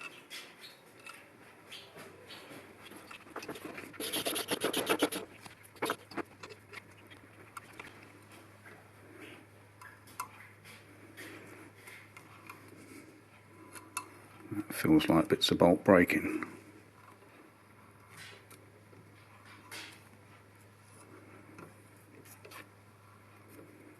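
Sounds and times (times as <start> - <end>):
metal scraping and rasping: 3.0 - 6.6.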